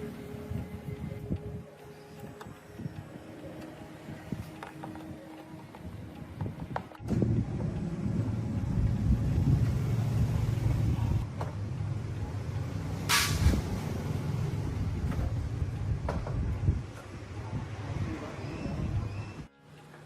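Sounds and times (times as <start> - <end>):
engine running unevenly: 4.5 - 16.6
short hiss: 13.1 - 13.6.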